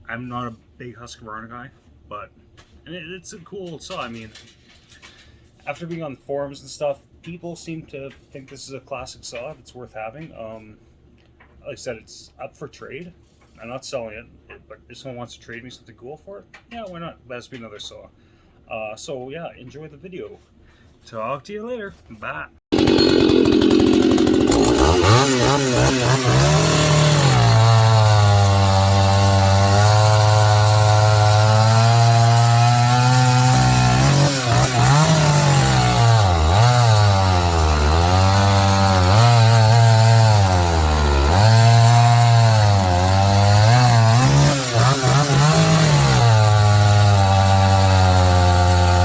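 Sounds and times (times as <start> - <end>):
chainsaw revving: 22.7 - 49.0.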